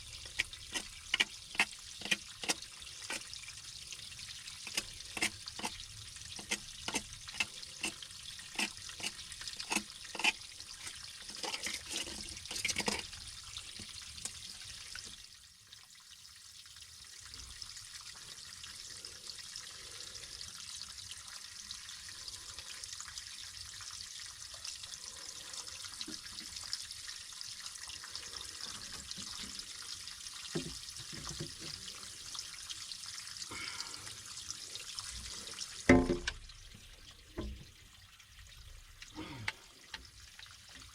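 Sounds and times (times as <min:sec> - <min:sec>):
water flowing from a well: 0:00.0 - 0:40.9
sharp clicks and knocks: 0:00.2 - 0:03.2, 0:35.9 - 0:36.4.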